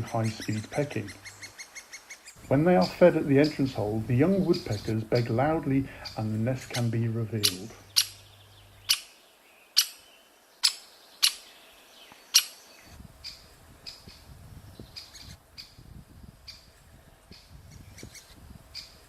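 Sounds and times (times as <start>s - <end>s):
woodpecker sharp call notes: 0.0s - 3.8s, 4.5s - 14.2s
young birds begging calls: 0.0s - 15.8s.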